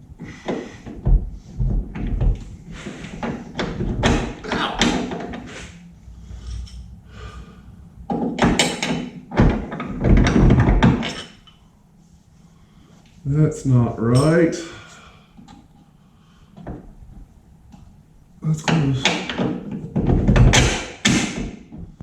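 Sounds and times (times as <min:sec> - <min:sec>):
low steady hum: 0:00.0 - 0:22.0
thumps of heavy parts: 0:00.3 - 0:11.4, 0:18.7 - 0:22.0.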